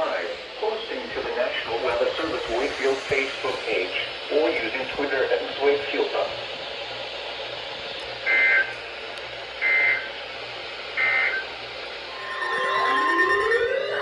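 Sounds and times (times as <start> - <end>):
radio hiss: 0.0 - 6.7
alarm tone: 12.0 - 14.0.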